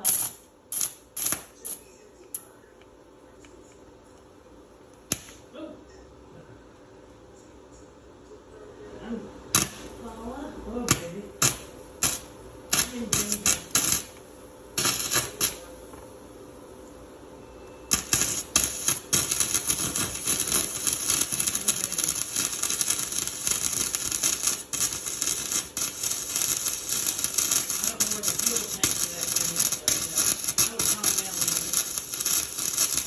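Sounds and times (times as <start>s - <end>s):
welding arc crackling: 0.0s - 1.7s, 9.5s - 16.6s, 17.9s - 33.0s.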